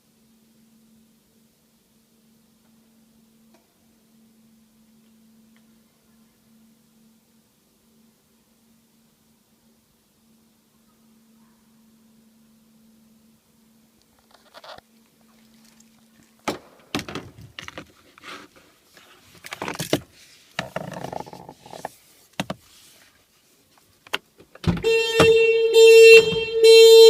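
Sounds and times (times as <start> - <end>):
car horn alarm pulses: 24.8 - 27.0.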